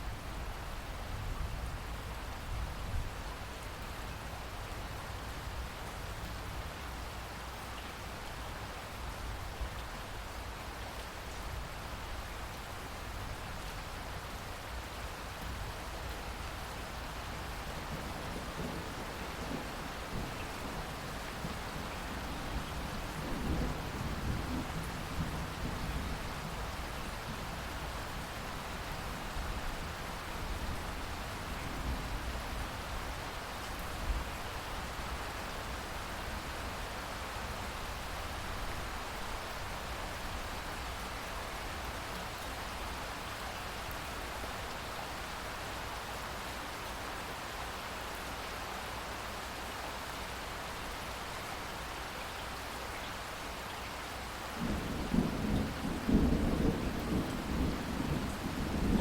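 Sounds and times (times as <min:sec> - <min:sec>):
heavy rain: 0:00.0 - 0:59.0
sharp thunderclap: 0:54.6 - 0:59.0
thunder rumbling: 0:54.6 - 0:59.0.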